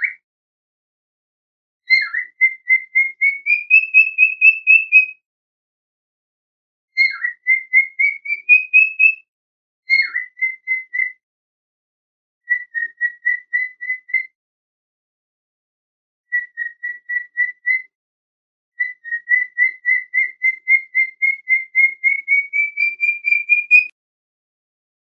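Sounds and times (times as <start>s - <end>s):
cockatiel chirping: 1.9s - 5.1s, 7.0s - 9.2s, 9.9s - 11.2s, 12.5s - 14.3s, 16.3s - 17.9s, 18.8s - 23.9s.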